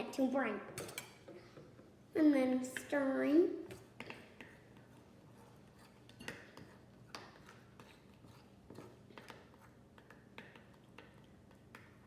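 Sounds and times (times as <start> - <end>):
spoon stirring glue in a bowl: 3.7 - 11.9.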